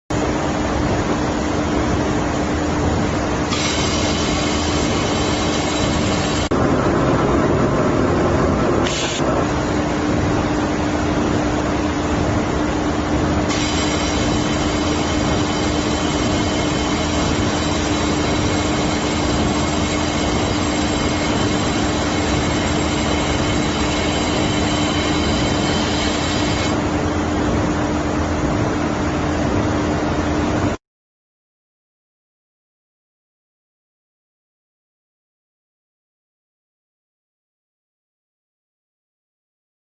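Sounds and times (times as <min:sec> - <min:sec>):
high whine: 0:00.1 - 0:30.8
welding machine hum and hiss: 0:00.2 - 0:27.7
loud rush of noise: 0:00.2 - 0:30.7.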